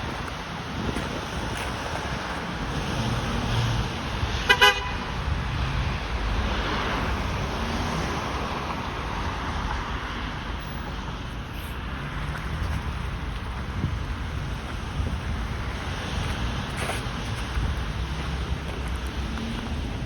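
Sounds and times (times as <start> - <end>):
city traffic rumble: 0.0 - 20.0
vehicle horn toots: 4.4 - 5.1.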